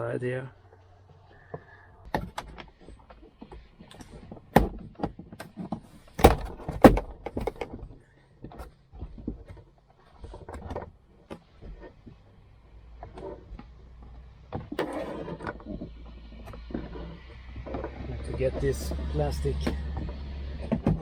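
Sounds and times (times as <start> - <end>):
knocks and rattles on plastic trim: 2.1 - 12.3.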